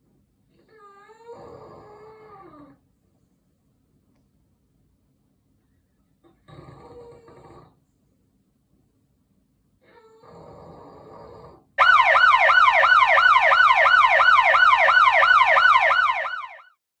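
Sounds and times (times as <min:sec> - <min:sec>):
puppy snoring: 0:00.5 - 0:02.9, 0:06.2 - 0:08.0, 0:09.8 - 0:11.8
siren-like falling whoops: 0:11.8 - 0:16.7.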